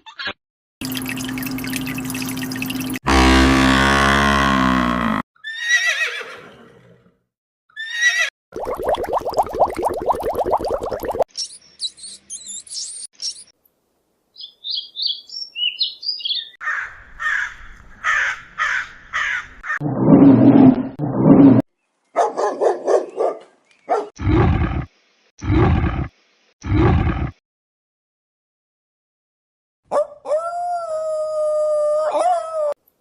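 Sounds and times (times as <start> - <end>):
harsh repeated animal calls: 24.2 - 27.4.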